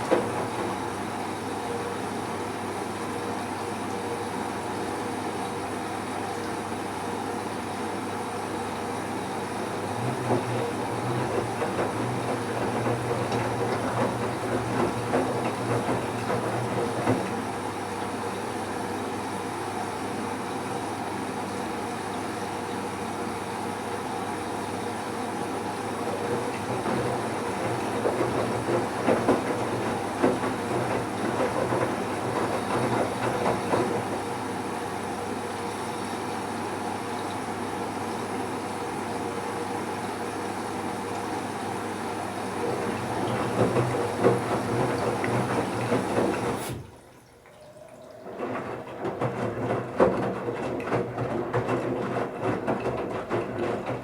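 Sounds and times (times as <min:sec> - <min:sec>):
washing machine motor hum: 0:00.0 - 0:54.0
wet towels sloshing in drum: 0:39.6 - 0:54.0.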